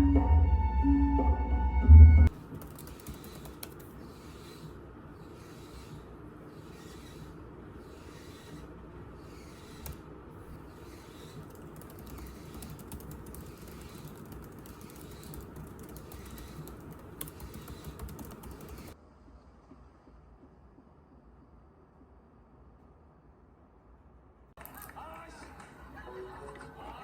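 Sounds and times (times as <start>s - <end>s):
low room hum: 0.0s - 27.0s
keyboard typing clicks: 2.3s - 3.9s, 11.4s - 19.0s.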